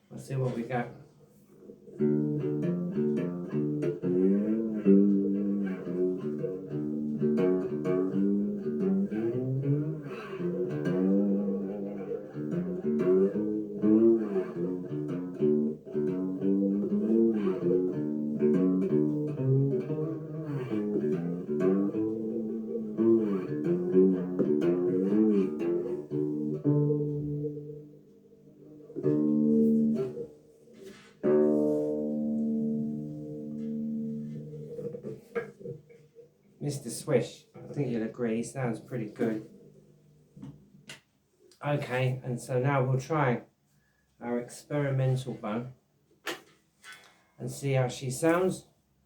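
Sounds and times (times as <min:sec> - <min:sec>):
slide guitar melody: 0:01.6 - 0:40.6.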